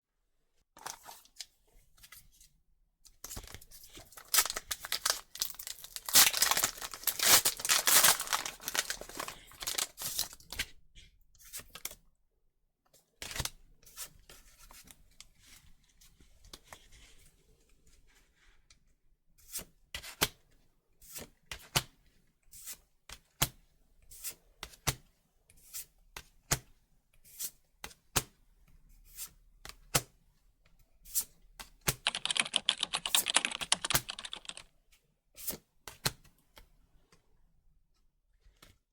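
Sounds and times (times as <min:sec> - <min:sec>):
foil wrapper tearing and crinkling: 0:04.2 - 0:10.4.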